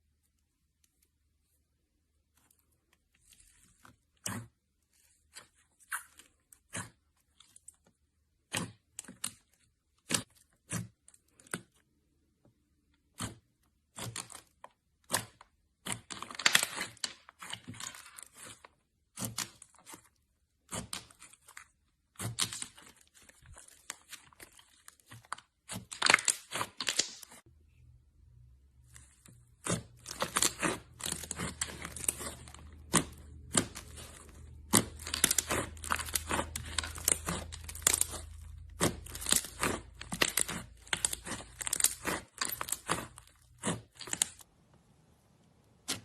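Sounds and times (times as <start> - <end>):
slime popping and crackling: 13.2 - 21.6, 22.2 - 27.4, 29.5 - 44.5.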